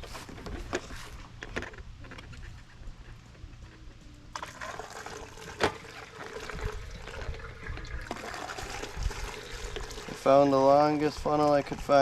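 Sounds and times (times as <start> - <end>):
gasoline pouring through funnel: 4.3 - 12.0.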